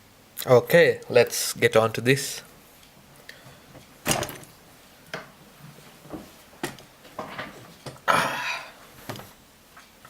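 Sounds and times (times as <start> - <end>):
light clicks and knocks of objects: 2.8 - 8.1.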